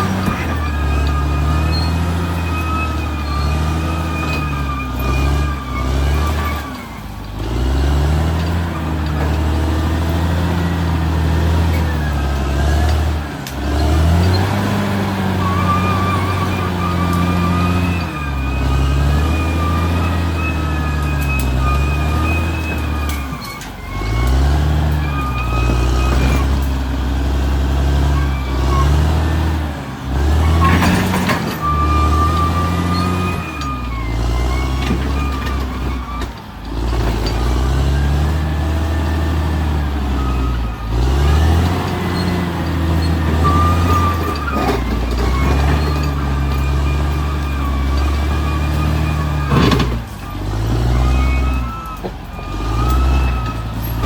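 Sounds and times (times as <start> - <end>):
bulldozer diesel engine working: 0.0 - 54.0.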